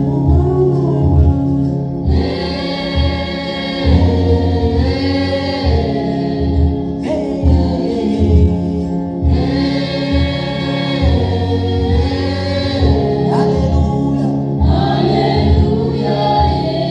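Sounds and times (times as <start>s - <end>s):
gospel choir singing: 0.0s - 16.9s
pulsing bass beat: 0.0s - 16.9s.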